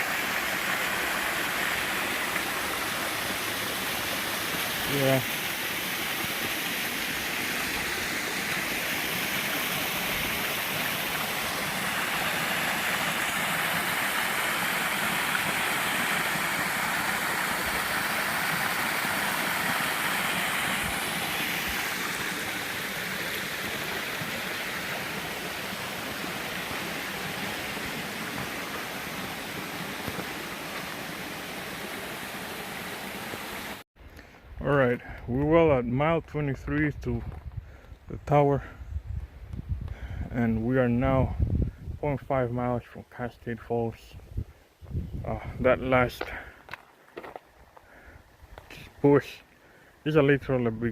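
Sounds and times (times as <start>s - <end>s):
creek water flowing: 0.0s - 33.8s.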